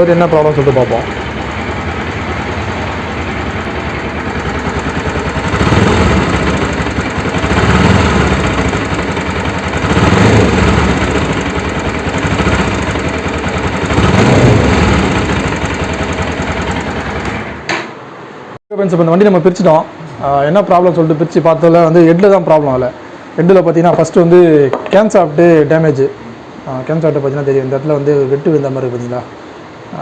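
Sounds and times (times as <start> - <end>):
engine ticking: 0.0 - 17.6
motorcycle engine idling: 0.0 - 17.6.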